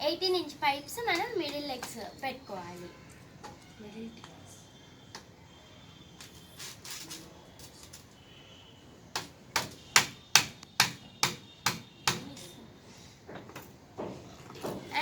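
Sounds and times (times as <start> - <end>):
sharp knocks on plastic pipe: 9.1 - 12.3.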